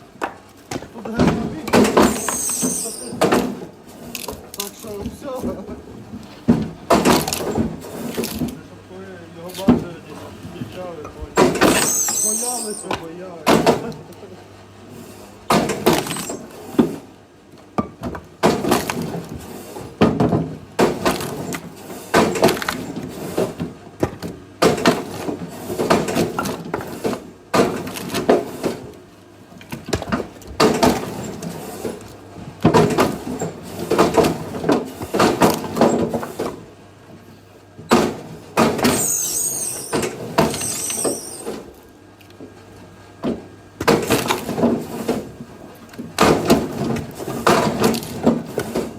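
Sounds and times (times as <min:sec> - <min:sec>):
wood splitting: 0:15.5 - 0:17.0, 0:18.0 - 0:19.3, 0:43.8 - 0:45.3, 0:45.9 - 0:48.9.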